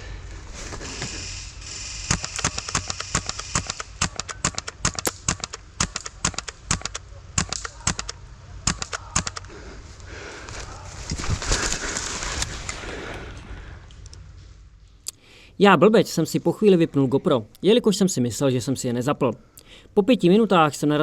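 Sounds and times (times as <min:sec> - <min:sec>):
airsoft guns firing: 0:01.6 - 0:09.6.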